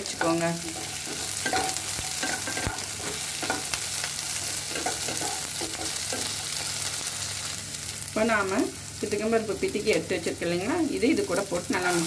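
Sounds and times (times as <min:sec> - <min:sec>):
spoon scraping a pan: 0:00.0 - 0:06.9
food sizzling in hot oil: 0:00.0 - 0:12.0.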